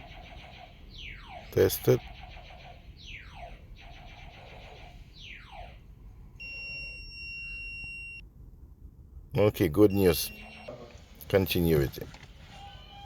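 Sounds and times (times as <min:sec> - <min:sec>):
multimeter continuity beep: 0:06.4 - 0:08.2, 0:09.8 - 0:10.8.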